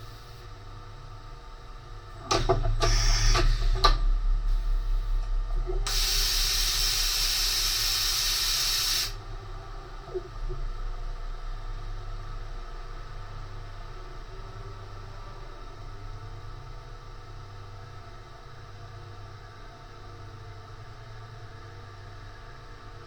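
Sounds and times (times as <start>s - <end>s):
milling machine humming: 2.8s - 9.2s
compressed air blast hissing: 5.9s - 9.2s.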